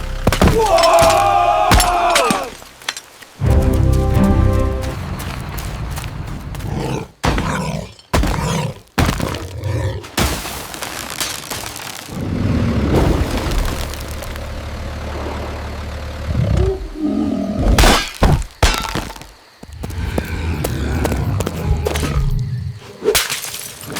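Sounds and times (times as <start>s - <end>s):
sharp shattering impacts: 0.0s - 5.0s
long rumbling crash: 12.2s - 17.0s.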